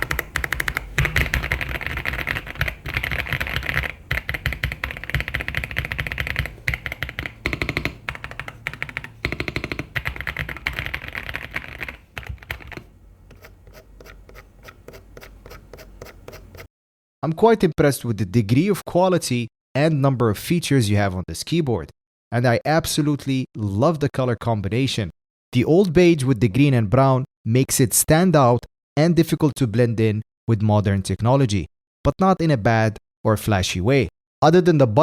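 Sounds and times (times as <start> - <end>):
mechanical keyboard typing: 0.0 - 16.6.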